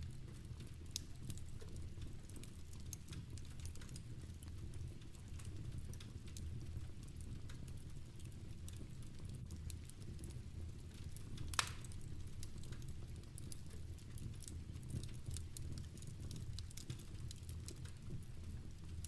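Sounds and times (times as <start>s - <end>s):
soft rain: 0.0s - 19.0s
wood fire crackling: 0.0s - 19.0s.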